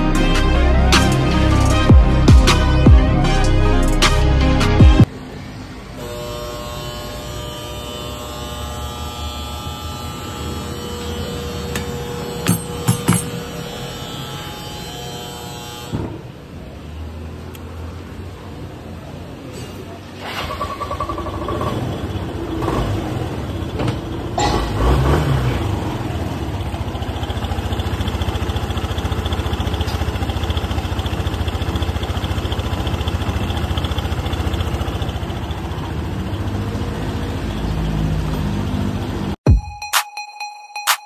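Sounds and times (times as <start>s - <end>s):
scooter engine running: 6.0s - 15.9s, 20.7s - 39.3s.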